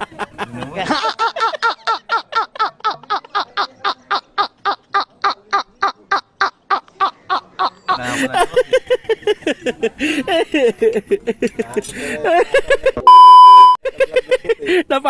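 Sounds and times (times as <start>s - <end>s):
high-pitched laughter: 0.0s - 11.5s.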